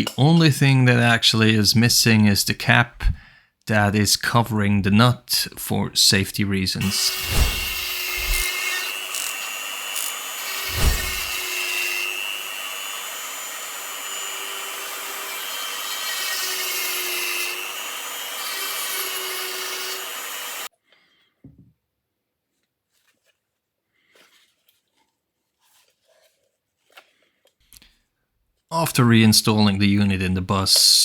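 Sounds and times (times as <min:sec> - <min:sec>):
power tool cutting with whine: 0:06.8 - 0:20.7.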